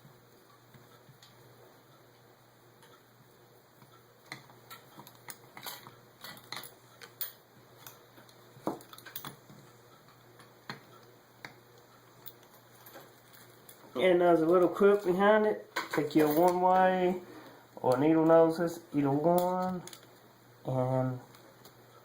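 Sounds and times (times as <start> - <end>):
metal parts and tools clicking: 4.7 - 8.0.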